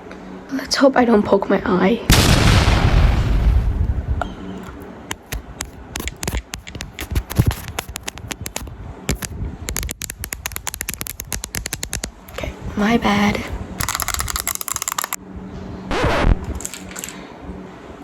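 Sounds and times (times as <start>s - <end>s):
small hard objects clicking: 4.6s - 15.2s, 16.5s - 17.2s.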